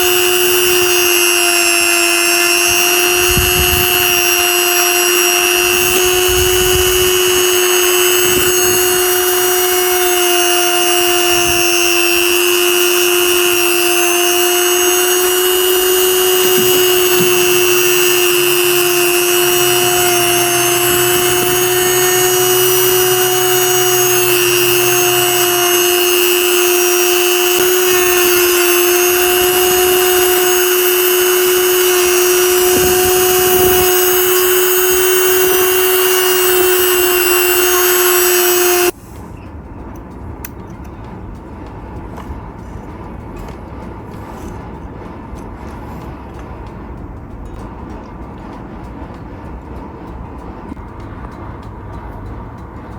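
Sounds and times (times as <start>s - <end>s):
power tool high-pitched whine: 0.0s - 39.4s
low hum: 0.0s - 52.9s.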